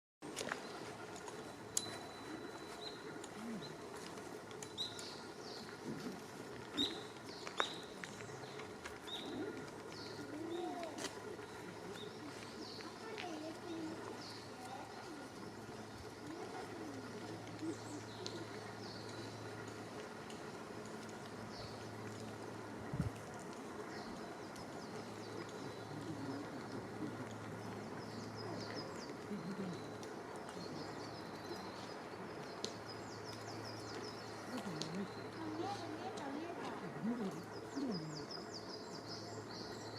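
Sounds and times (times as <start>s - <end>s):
songbirds chirping: 0.2s - 39.9s
birds with sharp high calls: 6.7s - 22.0s.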